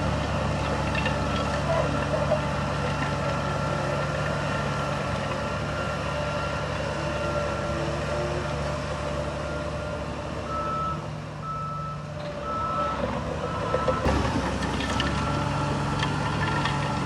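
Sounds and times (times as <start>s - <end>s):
diesel engine rumble: 0.0s - 17.0s
reversing alarm beeping: 10.4s - 15.8s.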